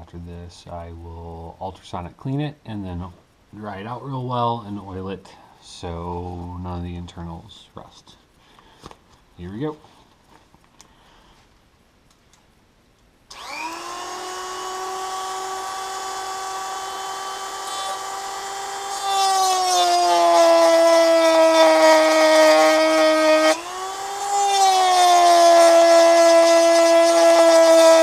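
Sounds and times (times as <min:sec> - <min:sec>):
rotary tool grinding metal: 0:13.3 - 0:28.0.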